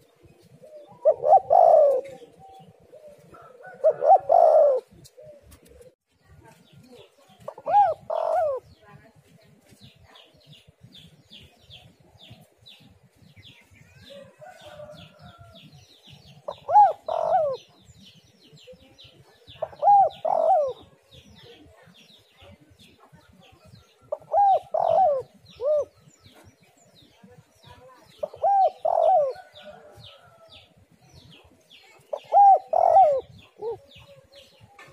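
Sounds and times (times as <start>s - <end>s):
dove cooing: 0.4s - 6.0s, 7.4s - 8.7s, 16.2s - 17.9s, 19.0s - 21.2s, 24.0s - 26.5s, 28.2s - 30.3s, 32.0s - 34.9s.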